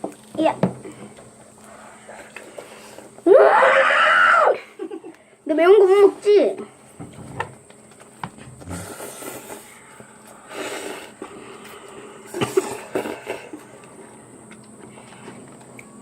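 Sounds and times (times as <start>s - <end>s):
sharp noisy breaths: 0.8s - 3.2s, 8.6s - 14.0s.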